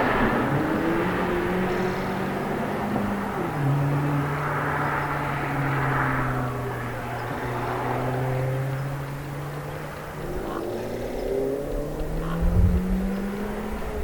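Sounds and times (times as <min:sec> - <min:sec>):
car engine driving by: 0:00.0 - 0:14.0.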